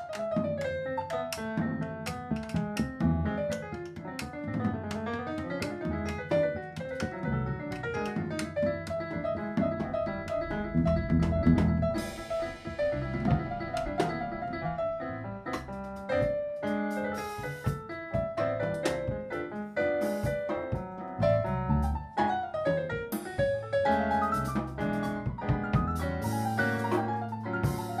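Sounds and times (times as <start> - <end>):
jazz group playing: 0.0 - 28.0
piano: 0.0 - 28.0
cymbal crash: 11.5 - 15.2.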